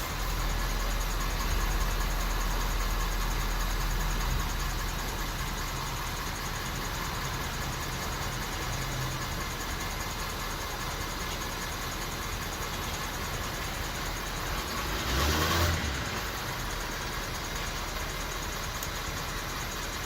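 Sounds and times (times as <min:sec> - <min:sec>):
truck engine running: 0:00.0 - 0:20.0.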